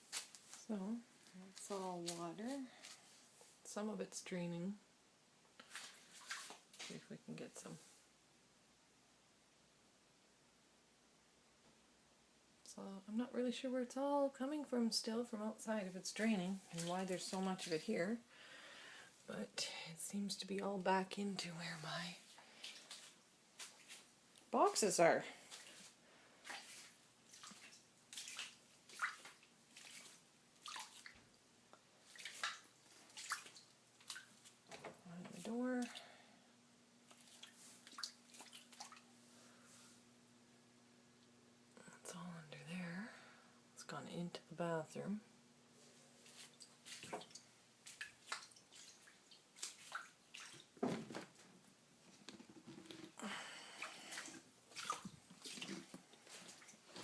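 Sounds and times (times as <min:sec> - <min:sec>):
floodwater splashing and trickling: 0:05.7 - 0:06.6, 0:26.4 - 0:31.2, 0:32.0 - 0:34.5, 0:37.1 - 0:39.1, 0:46.5 - 0:50.8, 0:53.4 - 0:57.0
water dripping into standing water: 0:26.4 - 0:34.9, 0:37.0 - 0:39.1, 0:46.5 - 0:50.8, 0:53.8 - 0:56.8.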